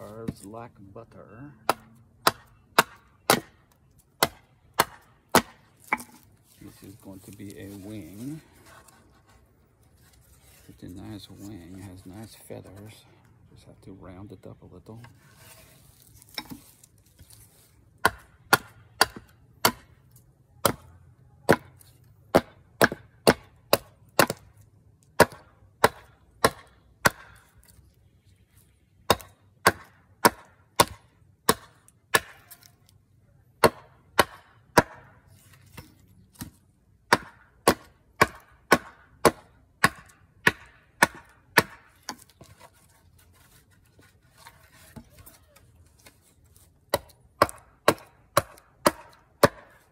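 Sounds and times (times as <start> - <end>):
hatchet chopping wood: 1.6 - 9.2, 16.2 - 17.3, 18.0 - 27.8, 29.0 - 32.8, 33.6 - 49.9.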